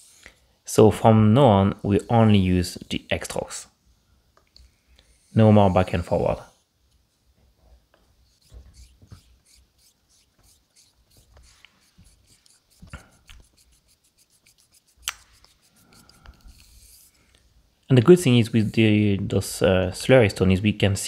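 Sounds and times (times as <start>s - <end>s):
razor scraping on whetstone: 8.3s - 17.1s.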